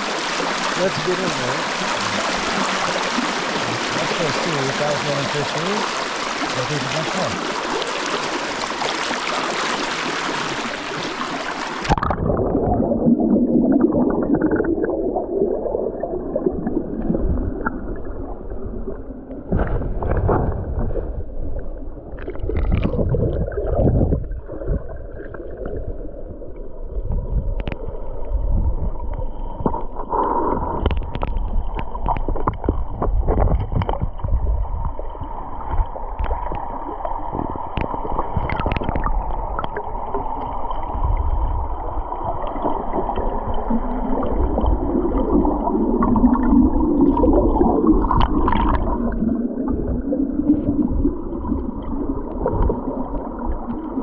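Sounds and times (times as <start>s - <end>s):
water churning underwater: 0.0s - 54.0s
underwater knocks and bumps: 6.5s - 14.8s, 19.4s - 21.3s, 22.2s - 25.9s, 27.0s - 54.0s.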